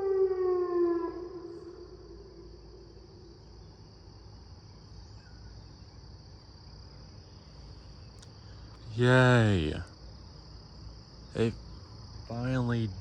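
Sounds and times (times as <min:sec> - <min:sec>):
warning siren winding down: 0:00.0 - 0:03.0
high insect chirr: 0:00.0 - 0:13.0.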